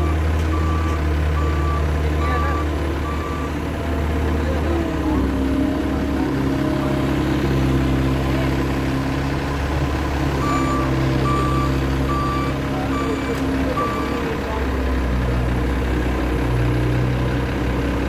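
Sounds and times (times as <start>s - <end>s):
reversing alarm beeps: 0.0s - 3.6s, 10.4s - 13.2s, 13.8s - 14.2s
diesel engine running: 0.0s - 18.0s.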